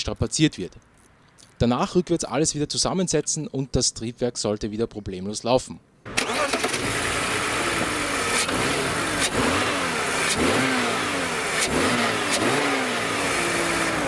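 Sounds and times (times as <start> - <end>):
car engine revving: 6.1 - 14.0.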